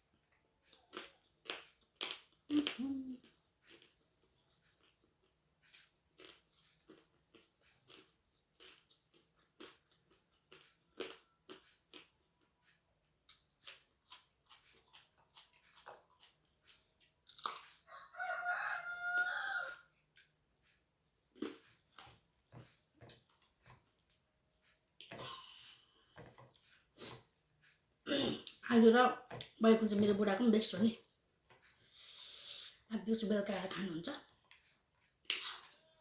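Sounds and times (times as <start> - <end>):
chewing and crunching food: 0.0 - 36.0
rooster crowing: 17.9 - 19.9.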